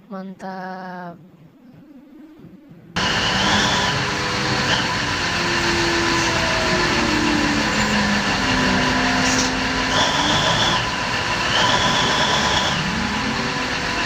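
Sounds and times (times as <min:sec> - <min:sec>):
high-pitched tones: 0:01.9 - 0:14.0
vehicle engine noise: 0:03.0 - 0:14.0.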